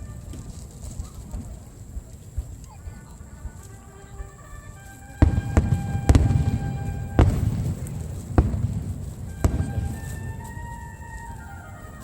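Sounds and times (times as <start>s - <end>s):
fireworks booming: 5.2s - 12.0s.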